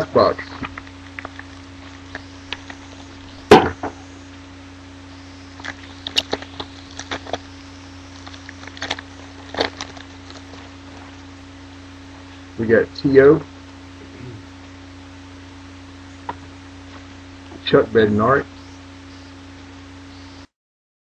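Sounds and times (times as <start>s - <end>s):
steady low hum: 0.0s - 20.5s
cardboard box thunk: 3.5s - 4.0s.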